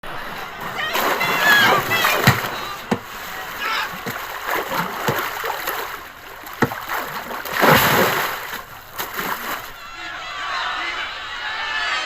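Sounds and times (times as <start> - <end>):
water splashing: 0.0 - 9.8
sharp water slaps: 0.8 - 9.8.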